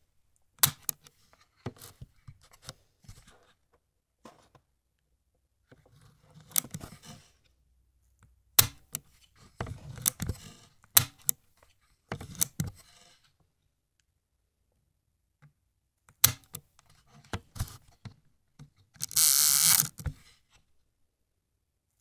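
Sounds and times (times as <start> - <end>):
camera mechanism clicking: 19.0 - 20.0.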